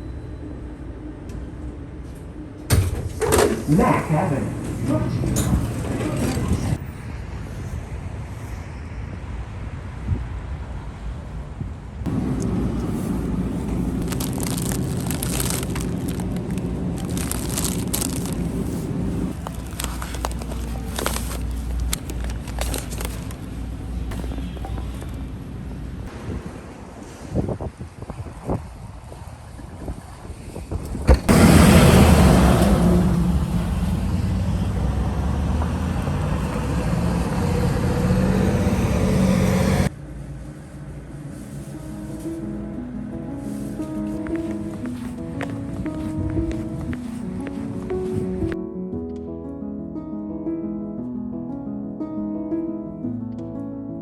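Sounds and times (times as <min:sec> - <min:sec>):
streetcar rumbling and rattling: 0:00.0 - 0:42.7, 0:43.4 - 0:48.6
low motor hum: 0:12.1 - 0:26.0, 0:31.3 - 0:39.9.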